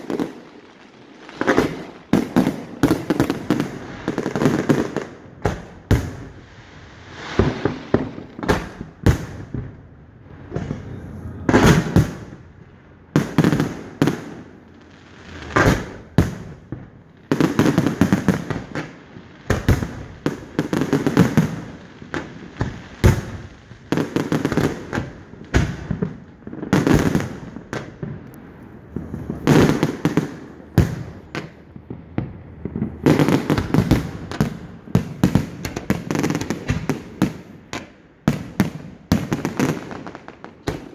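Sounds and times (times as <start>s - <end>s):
firework crackling: 0.0s - 40.9s.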